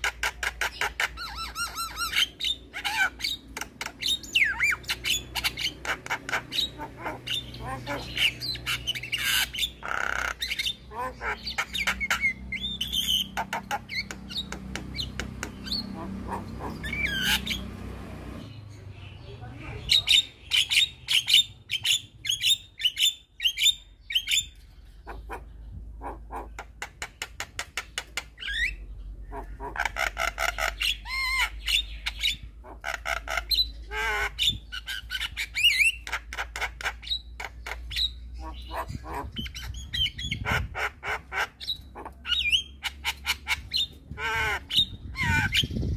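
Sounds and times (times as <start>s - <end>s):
bird singing with rattling clicks: 2.1s - 6.7s, 11.6s - 15.9s, 26.5s - 29.1s.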